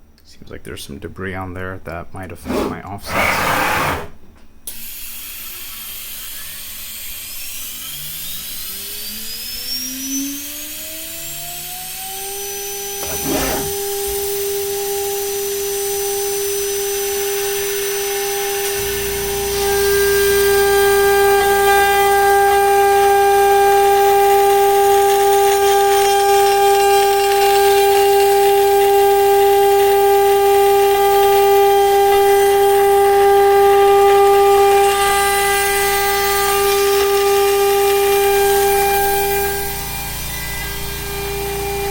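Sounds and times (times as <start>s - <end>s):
hiss: 2.4s - 4.1s, 4.7s - 7.6s
router spindle whining: 8.7s - 41.9s.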